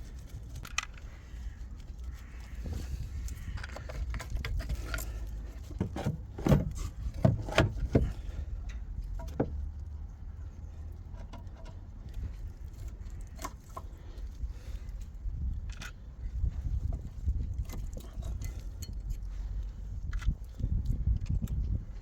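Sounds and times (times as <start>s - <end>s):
knocks of tools and metal parts: 3.6s - 9.7s.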